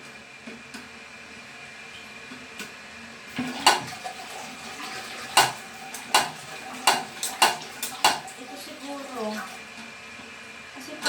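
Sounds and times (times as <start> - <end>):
toilet flush mechanism clacking: 2.3 - 10.0.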